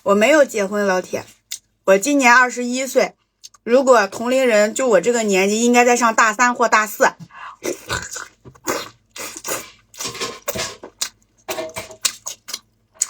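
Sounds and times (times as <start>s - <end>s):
chewing and mouth smacks: 1.4s - 1.7s, 7.8s - 13.0s.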